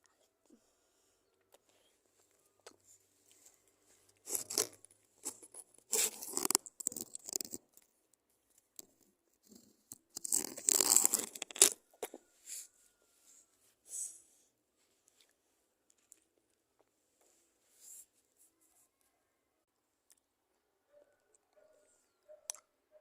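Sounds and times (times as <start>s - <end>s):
lollipop wrapper crackling: 4.1s - 7.8s, 9.9s - 12.2s.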